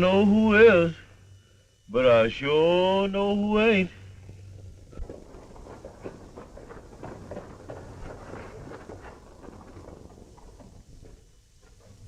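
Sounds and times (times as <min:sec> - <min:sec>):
low film soundtrack hum: 0:00.0 - 0:12.0
horse hoofbeats at a walk: 0:04.2 - 0:12.0.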